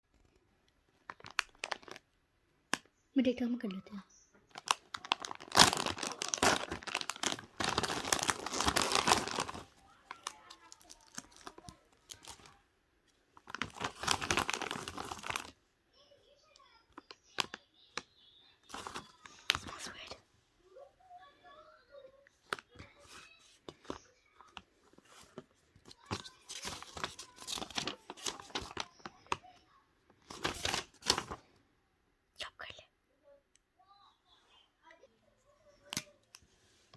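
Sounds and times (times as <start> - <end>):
crinkling and tearing: 1.0 - 2.1, 4.5 - 12.6, 13.4 - 15.6, 18.7 - 20.1, 22.4 - 29.5, 30.2 - 31.5
slime squeezed by hand crackling: 4.6 - 12.4.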